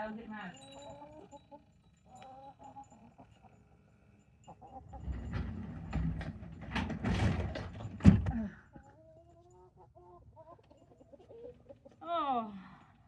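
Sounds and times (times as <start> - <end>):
parts rustling and clattering: 4.9 - 8.4.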